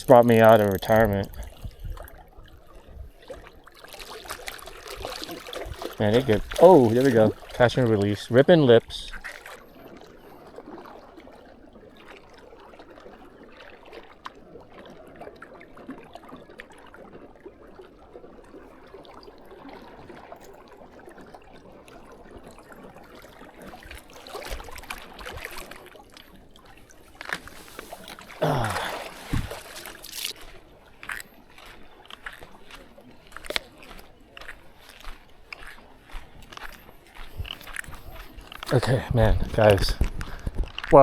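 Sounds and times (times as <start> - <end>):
water lapping against kayak: 0.0 - 41.0.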